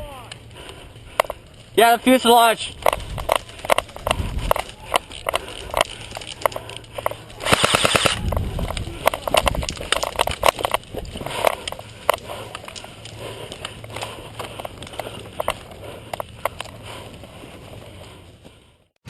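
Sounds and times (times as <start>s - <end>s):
airsoft gun shots: 7.4s - 8.2s
full-auto airsoft burst: 7.4s - 8.2s.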